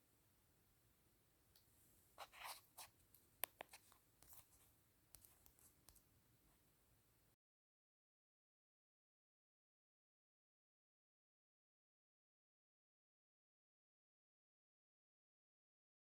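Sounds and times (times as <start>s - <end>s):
faint rustling and scratching: 1.8s - 6.7s.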